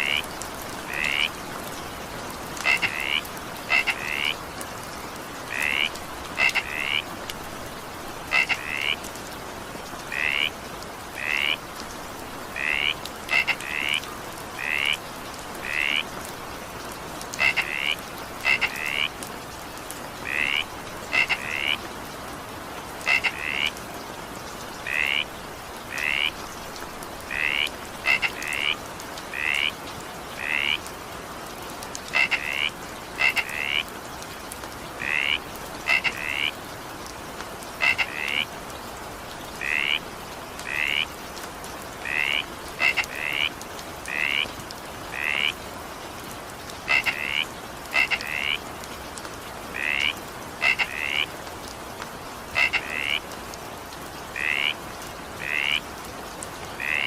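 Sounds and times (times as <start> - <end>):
frogs calling: 0.0 - 1.4, 2.6 - 4.4, 5.4 - 7.1, 8.3 - 9.1, 10.1 - 11.6, 12.4 - 16.2, 17.3 - 19.2, 20.2 - 21.9, 23.0 - 23.8, 24.8 - 26.5, 27.2 - 30.9, 32.0 - 33.9, 34.9 - 36.6, 37.8 - 38.6, 39.5 - 41.2, 42.0 - 44.5, 45.1 - 45.6, 46.8 - 48.6, 49.6 - 51.4, 52.5 - 53.3, 54.3 - 55.9, 56.7 - 57.0
steady rain: 0.0 - 57.0.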